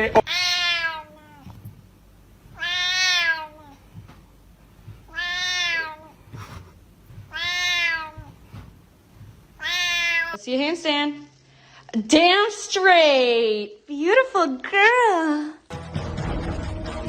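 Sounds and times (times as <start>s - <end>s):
cat meowing: 0.2s - 1.6s, 2.5s - 3.9s, 5.0s - 6.3s, 7.3s - 8.4s, 9.6s - 10.4s.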